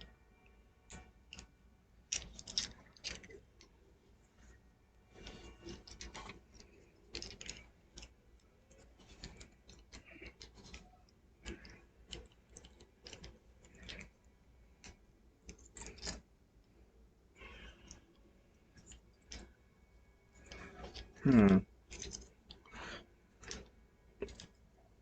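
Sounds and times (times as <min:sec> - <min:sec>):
plastic parts clicking and scraping: 0:02.1 - 0:16.8, 0:20.3 - 0:24.7.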